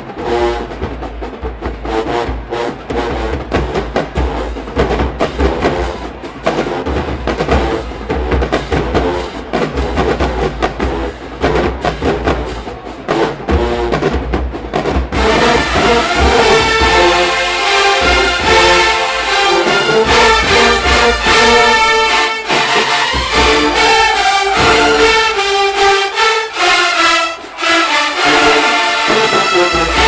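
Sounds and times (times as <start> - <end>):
horn section playing: 0.0 - 14.4, 15.0 - 30.0
bass drums: 0.0 - 17.3
marching drumline cadence: 0.0 - 30.0.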